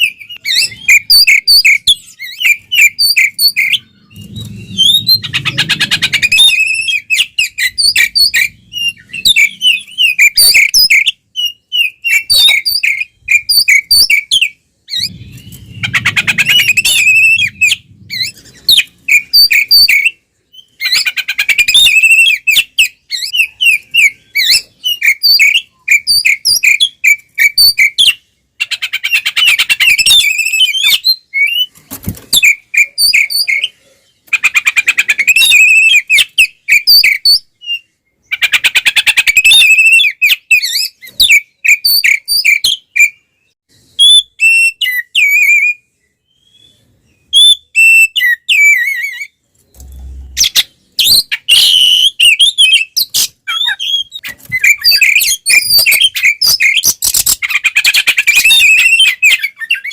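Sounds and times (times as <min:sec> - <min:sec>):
bird singing chirps and whistles: 0:00.0 - 0:31.7, 0:32.3 - 0:49.4, 0:50.3 - 0:59.9
bird harsh rattling call: 0:15.0 - 0:19.7.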